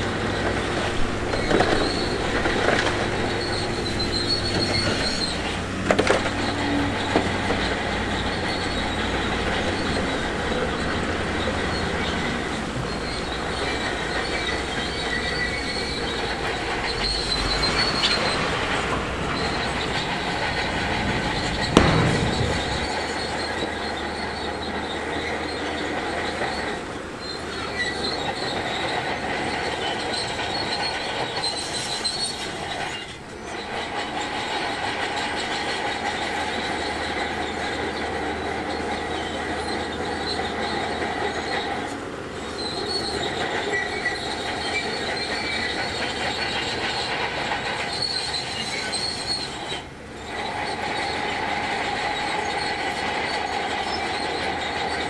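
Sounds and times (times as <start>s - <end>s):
bulldozer running: 0.0s - 41.6s
steel tracks squealing and clanking: 0.0s - 55.0s
sharp bang: 20.0s - 24.0s.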